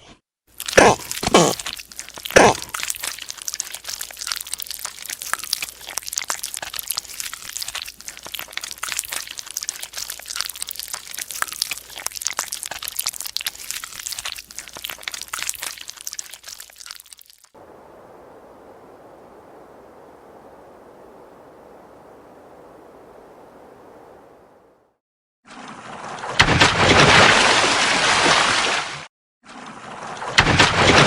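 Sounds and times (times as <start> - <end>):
crunching and crackling: 0.5 - 17.6.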